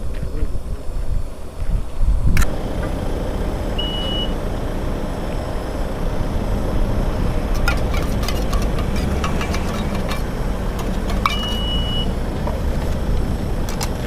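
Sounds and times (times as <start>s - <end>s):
motorcycle engine rumble: 0.0s - 14.0s
wind rush: 0.0s - 14.0s
short high beep: 3.8s - 4.4s, 11.3s - 12.1s.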